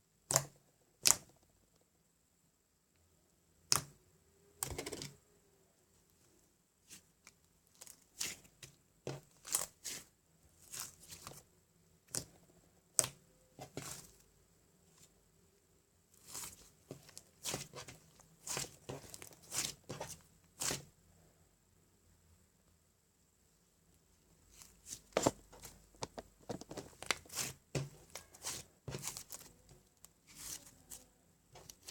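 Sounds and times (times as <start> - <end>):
rustling and scraping of handling: 5.9 - 11.5, 12.1 - 15.2, 16.1 - 21.0, 24.2 - 31.9.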